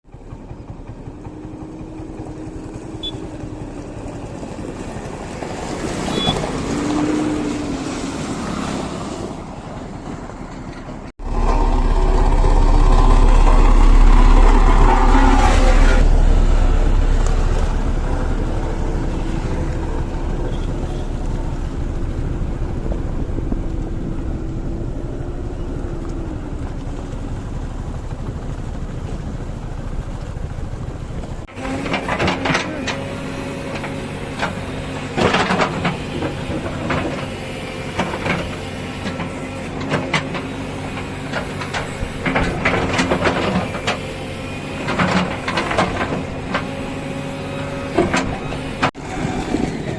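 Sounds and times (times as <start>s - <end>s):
heavy machinery diesel engines: 0.0s - 49.9s.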